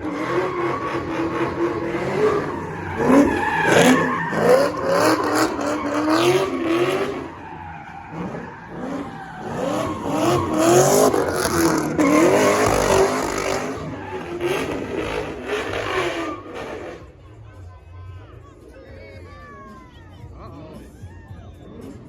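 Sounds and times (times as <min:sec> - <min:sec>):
car engine revving: 0:00.0 - 0:17.1
tires squealing: 0:00.0 - 0:17.4.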